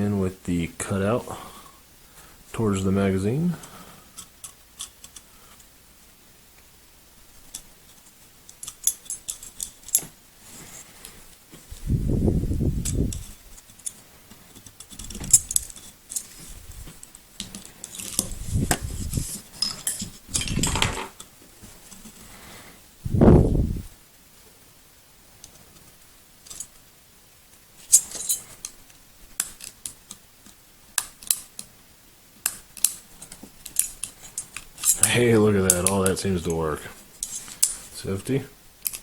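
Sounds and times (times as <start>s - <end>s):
pistol parts clicking and clinking: 27.9s - 28.8s, 33.6s - 35.1s.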